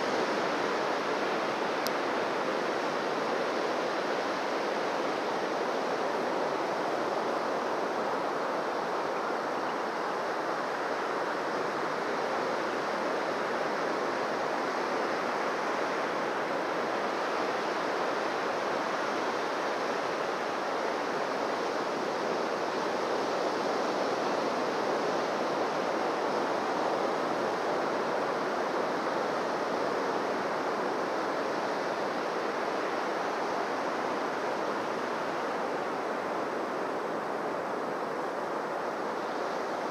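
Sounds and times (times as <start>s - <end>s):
surf washing on a beach: 0.0s - 39.9s.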